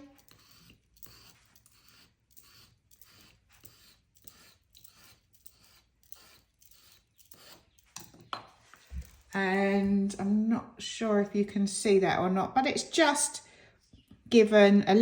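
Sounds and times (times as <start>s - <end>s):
metal nozzle scraping paste: 0.0s - 9.1s
woman talking: 9.3s - 13.4s, 14.3s - 15.0s.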